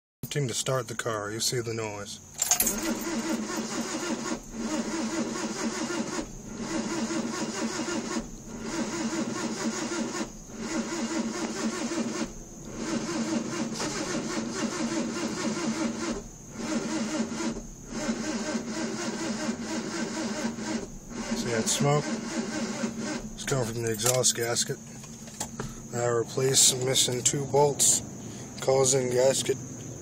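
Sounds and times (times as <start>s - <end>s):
car engine cranking: 2.2s - 27.9s.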